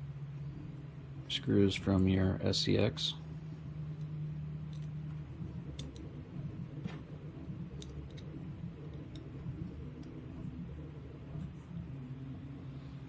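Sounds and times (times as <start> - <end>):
steady low hum: 0.0 - 13.0
small parts clicking: 4.7 - 5.0, 5.7 - 6.1, 7.7 - 9.3.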